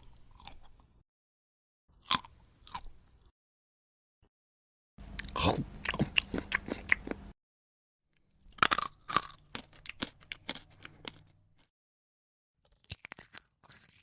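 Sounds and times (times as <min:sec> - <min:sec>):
chewing crunchy food: 0:00.0 - 0:00.9, 0:02.0 - 0:03.0, 0:05.0 - 0:07.3, 0:08.4 - 0:11.7, 0:12.6 - 0:14.0.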